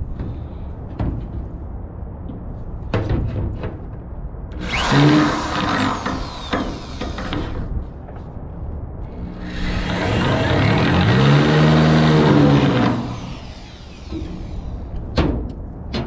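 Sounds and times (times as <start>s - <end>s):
steady low rumble: 0.0s - 16.0s
power drill boring into steel: 4.6s - 7.4s, 9.4s - 14.9s.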